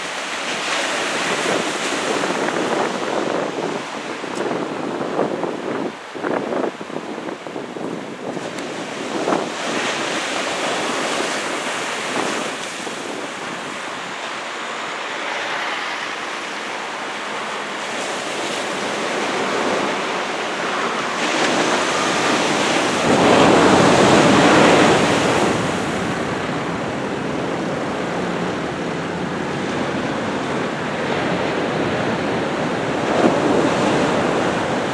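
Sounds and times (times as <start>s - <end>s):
ocean surf roaring: 0.0s - 34.9s
wind buffeting microphone: 0.0s - 34.9s
wave crash: 18.0s - 34.9s.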